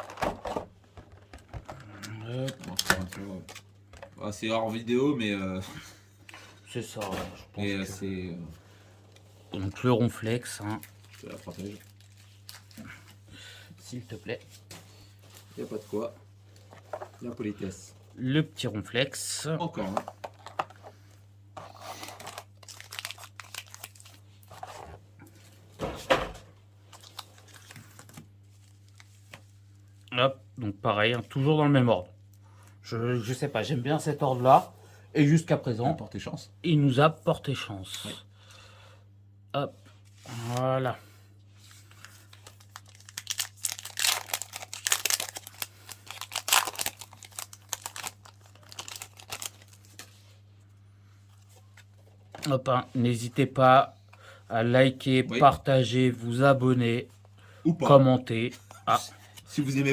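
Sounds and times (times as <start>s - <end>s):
foil wrapper crinkling and tearing: 2.0s - 3.7s, 10.2s - 13.2s, 21.7s - 24.6s, 26.9s - 29.4s, 41.9s - 50.4s.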